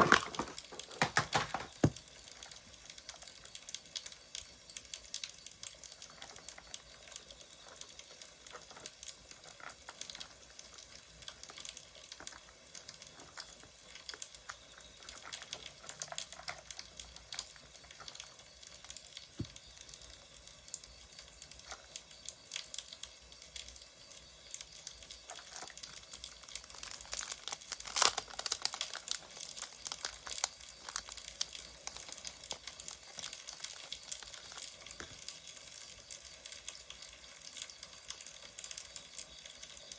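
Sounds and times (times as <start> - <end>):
paper crinkling: 0.0 - 3.2, 5.9 - 19.6, 25.2 - 35.3
firewood crackling: 0.0 - 39.9.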